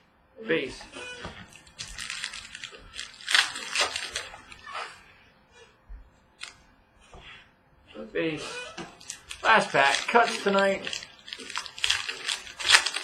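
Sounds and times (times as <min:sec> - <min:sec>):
cards rustling and scraping: 0:01.5 - 0:04.9, 0:08.8 - 0:13.0.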